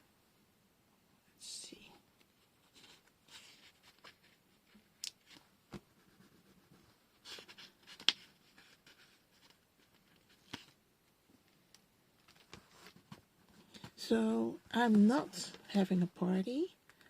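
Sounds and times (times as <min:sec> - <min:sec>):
paper rustling: 0:02.3 - 0:10.8.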